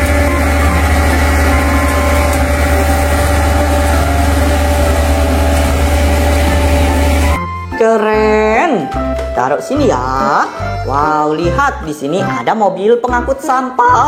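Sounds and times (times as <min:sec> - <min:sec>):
toy truck engine idling: 0:00.0 - 0:07.4.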